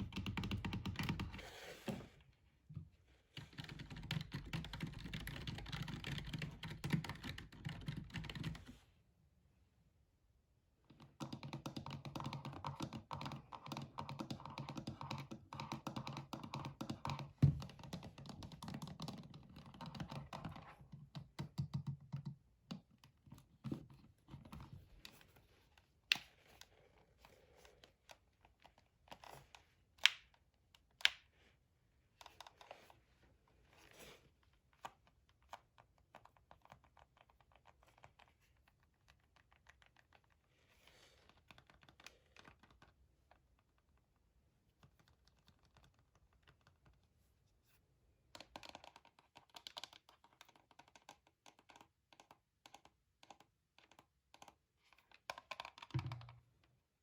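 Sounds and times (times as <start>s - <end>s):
keyboard typing: 0.0s - 1.4s, 3.4s - 8.7s, 11.0s - 23.1s, 48.4s - 54.6s.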